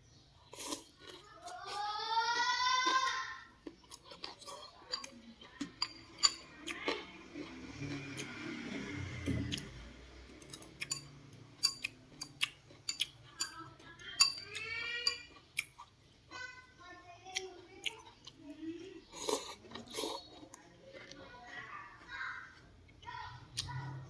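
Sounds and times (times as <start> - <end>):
person chewing food: 0.4 - 16.7, 17.3 - 24.0
sharp eating clicks: 3.6 - 8.5, 10.3 - 16.5, 17.3 - 21.4.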